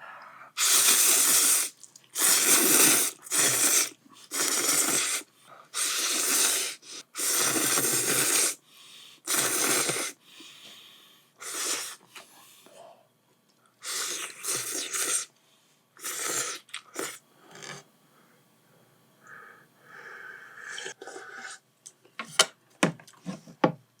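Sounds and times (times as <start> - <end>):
noodles slurped: 0.6 - 8.6, 9.3 - 10.2, 11.4 - 12.0, 13.8 - 15.3, 16.0 - 17.8, 20.7 - 21.6.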